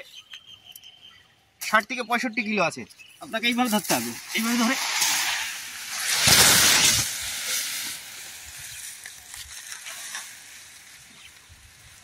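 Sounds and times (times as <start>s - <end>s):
cut grass rustling: 3.2s - 12.0s.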